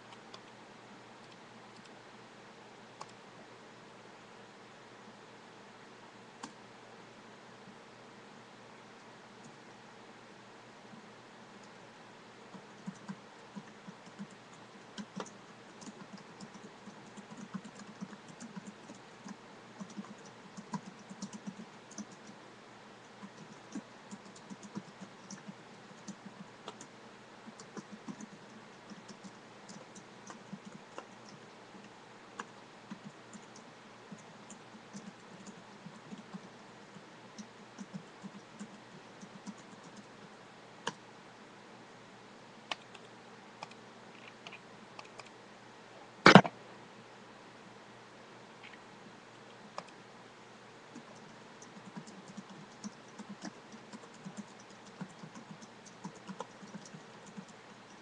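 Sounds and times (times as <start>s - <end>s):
steady background hiss: 0.0s - 58.0s
keyboard typing clicks: 12.5s - 22.4s, 23.2s - 26.9s, 27.5s - 31.4s, 32.4s - 36.5s, 50.9s - 58.0s.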